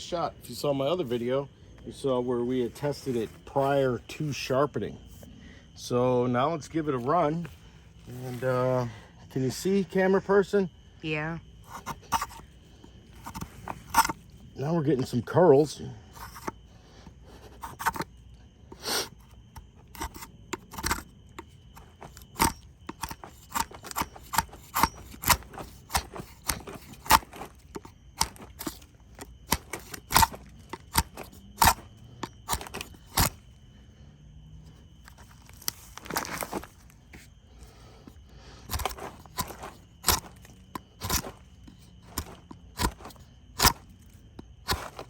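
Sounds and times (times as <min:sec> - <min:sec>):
drawknife shaving wood: 0:11.6 - 0:14.4, 0:15.6 - 0:33.5, 0:34.8 - 0:45.0.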